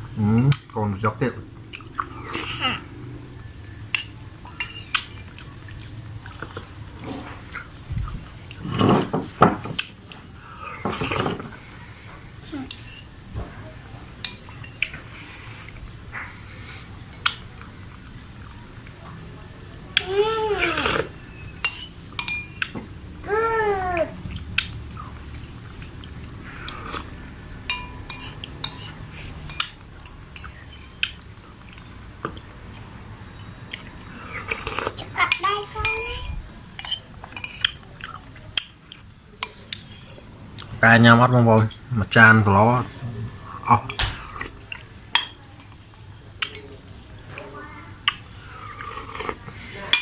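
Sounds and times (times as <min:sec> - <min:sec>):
low background hum: 0:00.0 - 0:50.0
spoon clinking against a dish: 0:21.4 - 0:22.7, 0:27.7 - 0:31.1, 0:36.8 - 0:37.8, 0:45.1 - 0:45.7
spoon clinking on dishware: 0:21.6 - 0:22.6, 0:27.7 - 0:28.9, 0:45.1 - 0:45.4.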